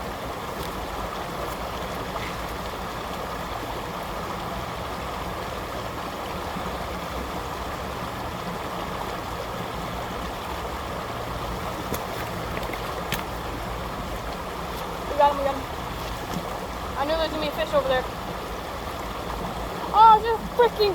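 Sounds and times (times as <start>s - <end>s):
creek water rushing over rocks: 0.0s - 20.9s.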